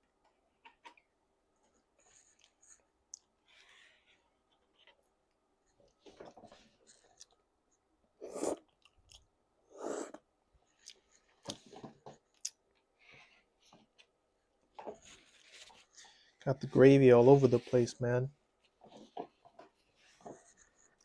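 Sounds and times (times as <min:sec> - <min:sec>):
person chewing food: 0:02.2 - 0:03.4, 0:07.0 - 0:07.4, 0:08.3 - 0:09.3, 0:10.1 - 0:11.6, 0:12.2 - 0:12.8.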